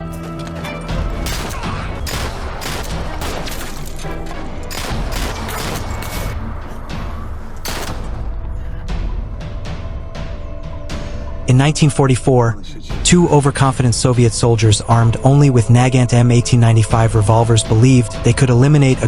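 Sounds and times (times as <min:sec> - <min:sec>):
dramatic background music: 0:00.0 - 0:19.0
gunshots: 0:01.1 - 0:08.8.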